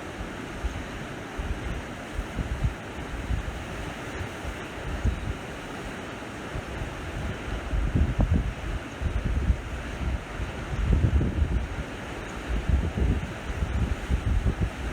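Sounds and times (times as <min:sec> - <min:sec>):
sea waves washing on shore: 0:00.0 - 0:14.9
wind buffeting microphone: 0:00.6 - 0:05.5, 0:06.5 - 0:14.9.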